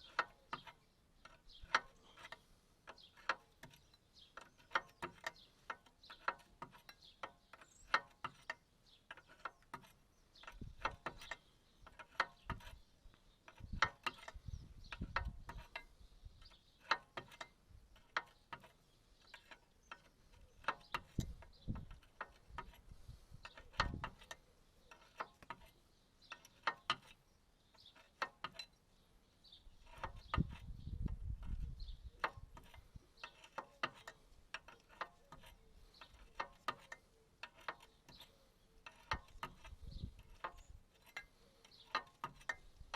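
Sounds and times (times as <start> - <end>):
ratchet spanner clicking: 19.3 - 25.7, 29.8 - 42.9.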